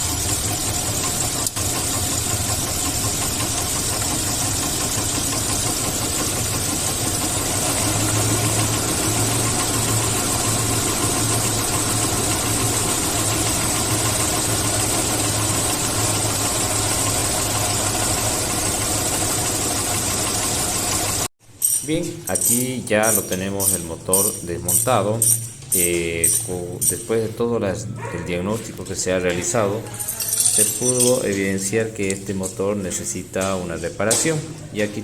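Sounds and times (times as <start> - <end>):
car engine idling with knock: 0.0 - 21.3.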